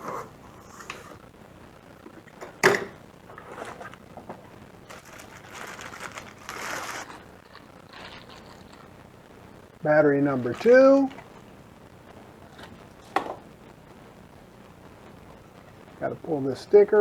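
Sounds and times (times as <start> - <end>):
packaging rustling: 3.3 - 9.0.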